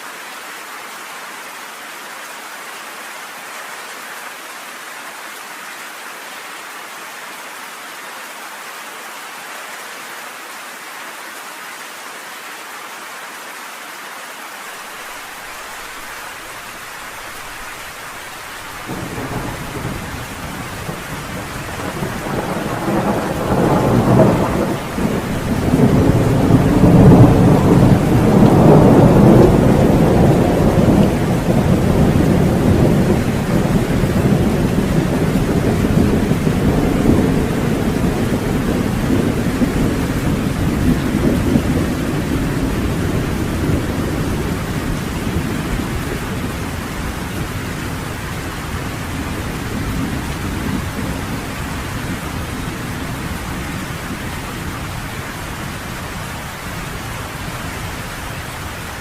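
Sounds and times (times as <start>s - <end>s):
steady rain falling: 0.0s - 59.0s
rolling thunder: 18.6s - 59.0s.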